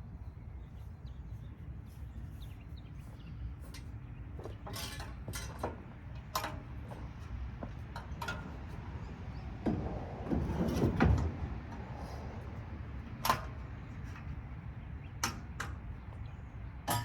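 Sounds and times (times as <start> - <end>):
metal knocks and rattles: 3.7 - 12.3.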